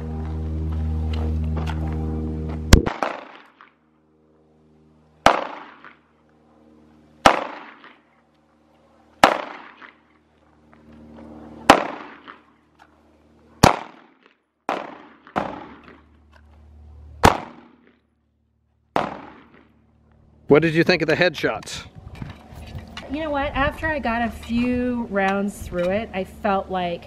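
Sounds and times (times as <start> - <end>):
pistol shots with echo: 2.8 - 3.6, 5.2 - 6.0, 7.2 - 8.0, 9.2 - 10.0, 11.7 - 12.4, 13.6 - 16.0, 17.2 - 17.9, 19.0 - 19.6.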